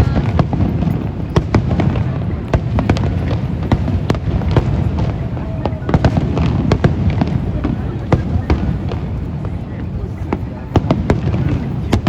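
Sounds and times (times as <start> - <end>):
fireworks cracking and banging: 0.0 - 12.0.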